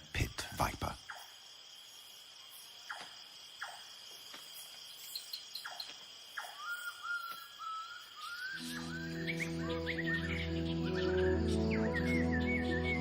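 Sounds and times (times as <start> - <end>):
crickets trilling: 0.0 - 13.0
wavering whistle-like tone: 7.6 - 13.0.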